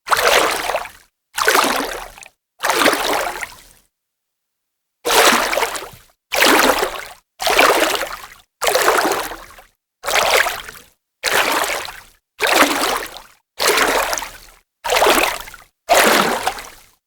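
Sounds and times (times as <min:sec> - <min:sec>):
hand splashing in water: 0:15.9 - 0:16.7.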